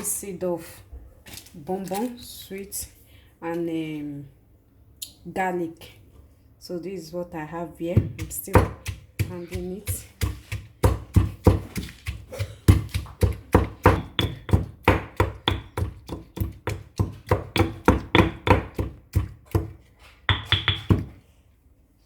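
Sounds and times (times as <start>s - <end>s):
pestle pounding in a mortar: 7.9s - 21.2s.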